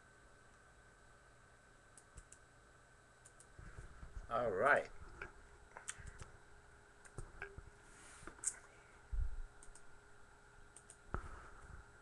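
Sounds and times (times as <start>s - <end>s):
mouse and keyboard clicks: 10.8s - 11.0s.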